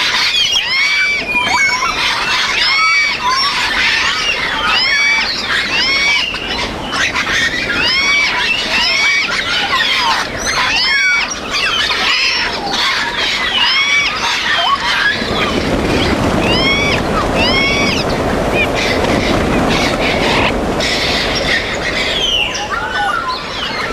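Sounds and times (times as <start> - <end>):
parrots squawking: 0.0 - 23.9
low rumbling noise: 12.6 - 23.9.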